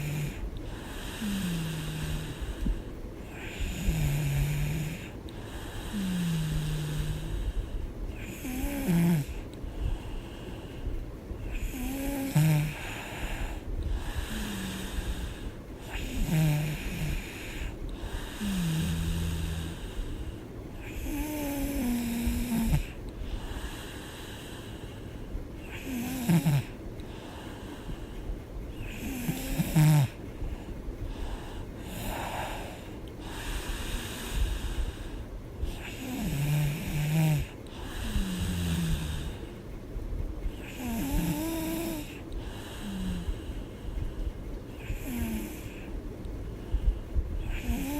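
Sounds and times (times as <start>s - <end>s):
woman snoring: 0.0s - 9.5s, 11.4s - 20.2s, 20.8s - 24.7s, 25.6s - 28.0s, 28.8s - 30.2s, 31.8s - 39.6s, 40.5s - 43.6s, 44.7s - 45.9s, 47.4s - 47.9s
noisy breathing: 0.0s - 47.9s.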